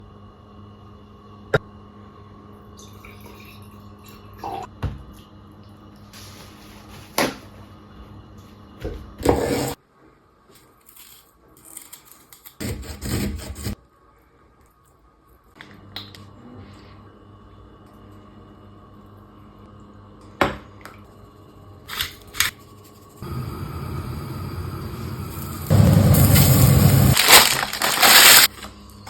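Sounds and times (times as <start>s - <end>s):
steady low hum: 22.5s - 29.0s.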